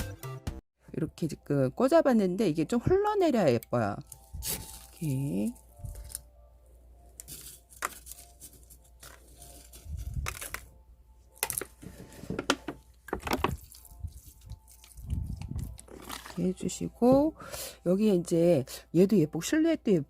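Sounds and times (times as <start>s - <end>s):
hands handling potting soil: 3.5s - 6.3s, 7.1s - 10.7s, 11.3s - 17.3s.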